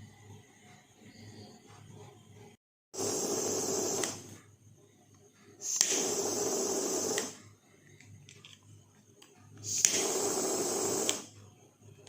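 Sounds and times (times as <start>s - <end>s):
blow torch hissing: 3.0s - 4.4s, 5.6s - 7.6s, 9.6s - 11.4s
igniter click: 3.0s - 4.4s, 5.7s - 7.4s, 9.7s - 11.3s.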